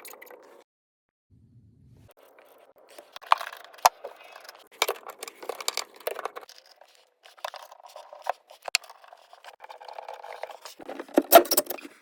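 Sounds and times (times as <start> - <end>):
light clicks and scrapes: 2.1 - 12.0.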